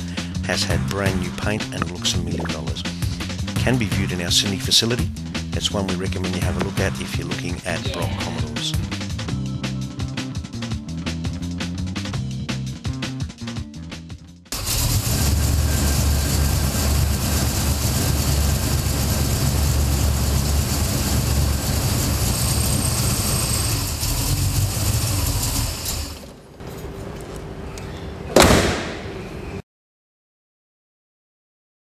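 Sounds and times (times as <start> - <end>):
loud engine rumbling: 14.5 - 26.4
sharp bang: 28.4 - 29.2.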